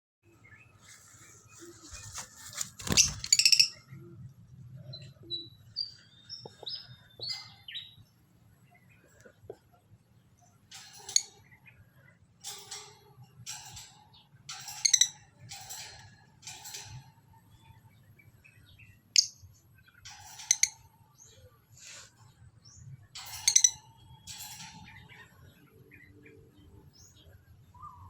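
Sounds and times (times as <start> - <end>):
small bird chirping: 0.4 - 4.1, 13.6 - 28.0.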